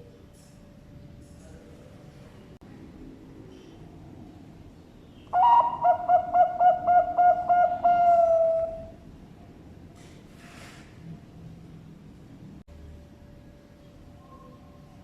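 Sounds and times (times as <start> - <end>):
dove cooing: 5.3 - 9.0.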